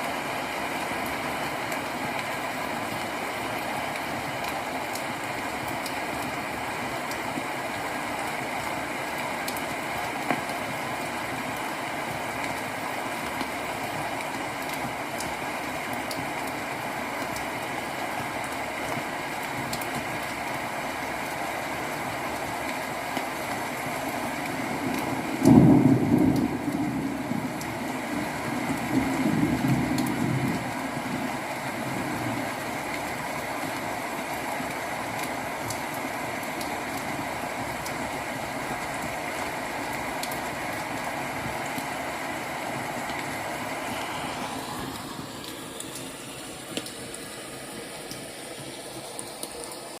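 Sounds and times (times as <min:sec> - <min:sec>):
steady rain: 0:00.0 - 0:50.0
thunder clap rumbling: 0:24.8 - 0:31.3.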